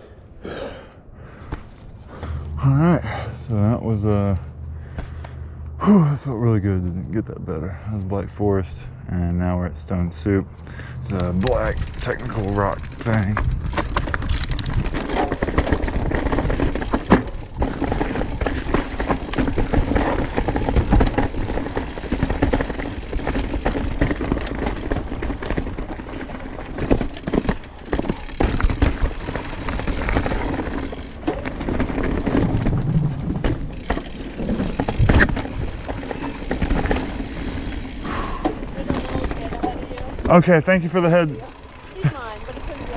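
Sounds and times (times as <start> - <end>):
bike tyres rolling over rock: 10.8 - 42.9
bike knocks and rattles: 11.1 - 40.4, 41.3 - 42.9.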